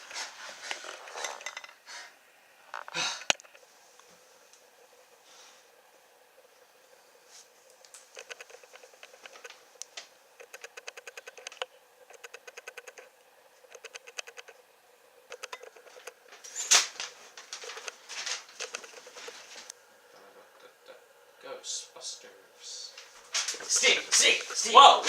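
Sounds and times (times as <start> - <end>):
typewriter typing: 10.4 - 13.0, 13.7 - 14.5, 15.3 - 16.1, 16.7 - 19.4.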